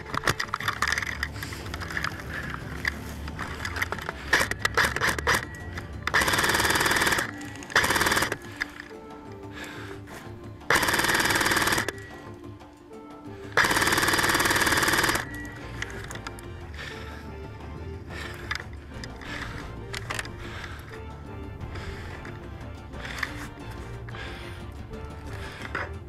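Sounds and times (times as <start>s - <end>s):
electric gun firing bursts: 4.3s - 5.5s, 6.1s - 8.6s, 10.7s - 12.0s, 13.6s - 15.4s.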